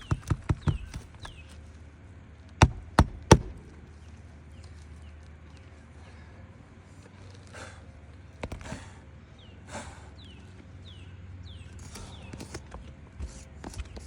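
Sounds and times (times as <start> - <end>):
sharp knocks: 2.6 - 3.8.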